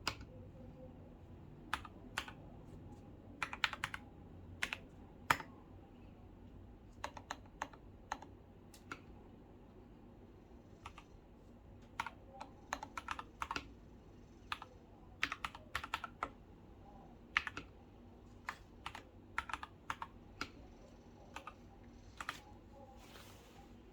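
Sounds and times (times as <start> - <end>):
mechanical keyboard typing: 1.7 - 2.4, 3.4 - 5.6, 6.9 - 9.2, 10.8 - 11.1, 11.8 - 13.8, 14.4 - 22.5.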